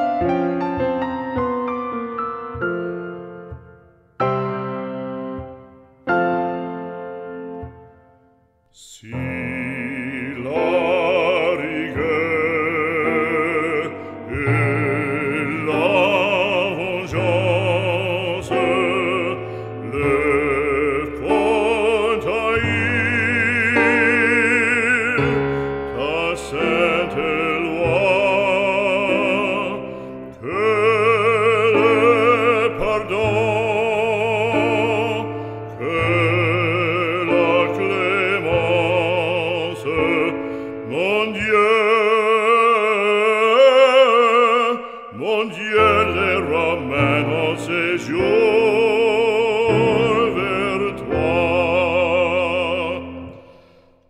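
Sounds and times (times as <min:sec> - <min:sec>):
instrumental accompaniment: 0:00.0 - 0:44.4
opera singer with vibrato: 0:08.7 - 0:53.7.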